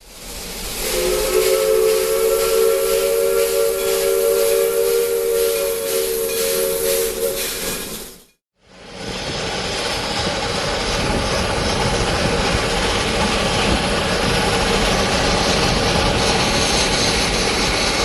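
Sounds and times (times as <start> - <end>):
loud steam hiss: 0.0 - 18.0
steam locomotive chime whistle: 0.4 - 8.4.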